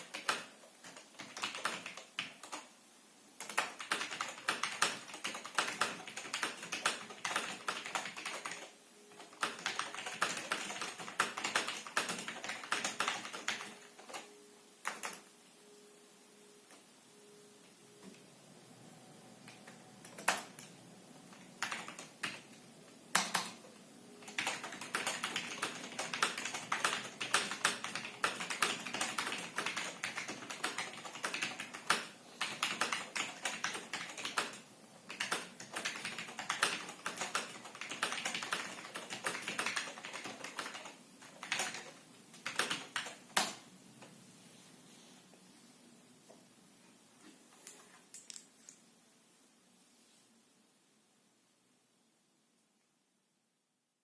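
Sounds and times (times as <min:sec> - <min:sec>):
mechanical keyboard typing: 0:00.0 - 0:02.7, 0:03.4 - 0:15.2, 0:19.5 - 0:20.7, 0:21.3 - 0:22.5, 0:23.1 - 0:23.6, 0:24.2 - 0:43.6.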